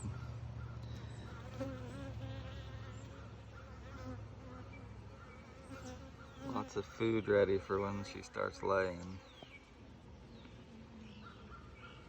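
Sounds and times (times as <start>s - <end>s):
single bees droning past: 0.0s - 9.4s
bees humming: 1.0s - 9.4s.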